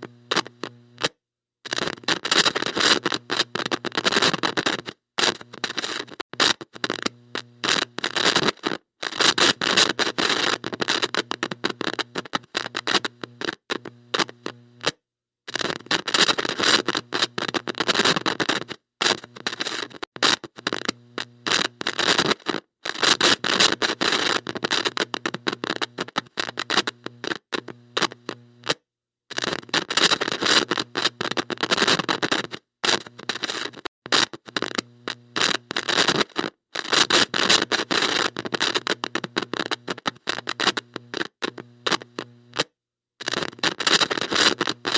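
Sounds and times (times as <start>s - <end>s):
buzzing hum: 0.0s - 1.2s, 1.8s - 8.4s, 9.2s - 14.9s, 19.1s - 22.3s, 23.1s - 28.8s, 29.4s - 36.3s, 36.9s - 42.7s.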